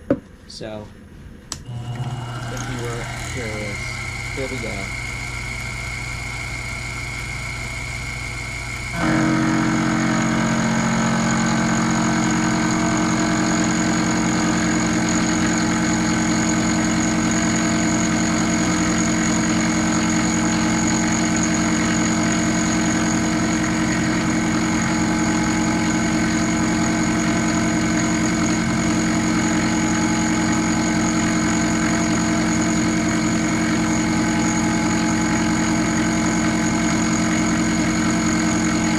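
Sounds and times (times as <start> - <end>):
milling machine whine: 1.5 - 38.9.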